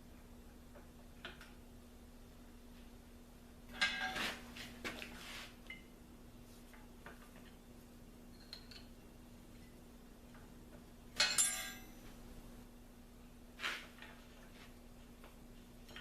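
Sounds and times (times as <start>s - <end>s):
steady low hum: 0.0s - 16.0s
metal parts clinking: 8.3s - 8.9s, 11.2s - 12.0s
metal piece ringing: 11.2s - 12.0s.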